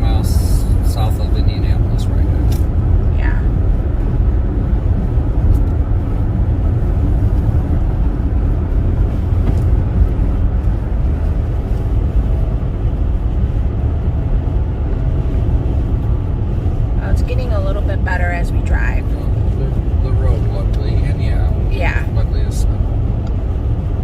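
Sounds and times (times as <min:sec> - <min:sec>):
tyre and engine road rumble: 0:00.0 - 0:24.0
wind over car body: 0:02.2 - 0:18.0.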